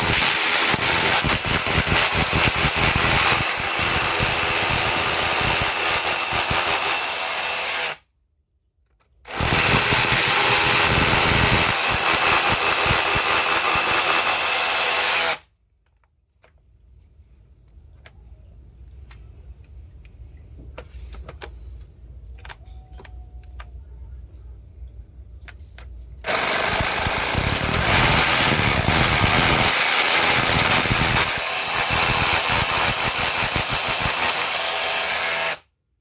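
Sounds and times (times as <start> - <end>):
rotary hammer drilling: 0.0 - 8.0, 9.3 - 15.4, 26.2 - 35.6.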